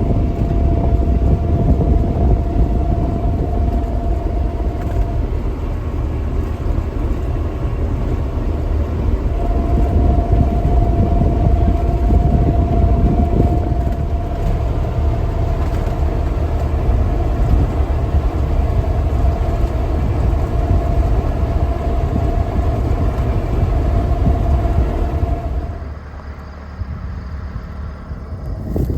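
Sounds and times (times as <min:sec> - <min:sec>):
harvester engine rumbling: 0:00.0 - 0:28.9
thin steady whine: 0:00.0 - 0:28.9.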